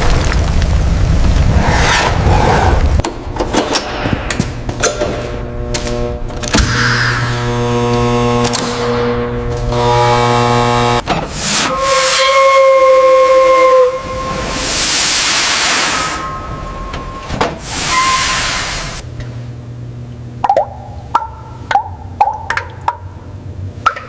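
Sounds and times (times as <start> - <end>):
low hum: 0.0 - 12.0, 12.8 - 24.0
steam whistle blowing: 9.7 - 19.0
hissing steam bursts: 14.0 - 16.7, 17.6 - 19.0.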